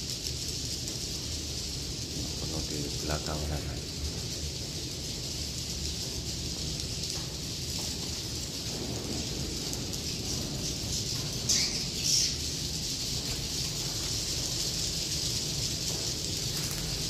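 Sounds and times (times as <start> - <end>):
steady low hum: 0.0 - 17.0
swiftlets twittering and clicking: 9.7 - 17.0
loud bird calls sliding down: 10.2 - 12.8.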